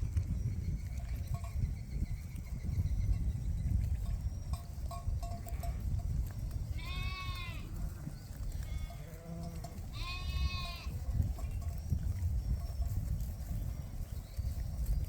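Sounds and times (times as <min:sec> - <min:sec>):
sheep bleating: 0:06.7 - 0:07.8, 0:08.6 - 0:11.0.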